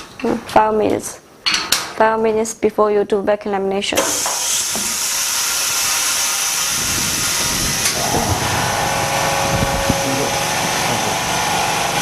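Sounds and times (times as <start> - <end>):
compressed air hissing: 4.0 - 12.0
mechanical hum with low rumble: 6.6 - 12.0.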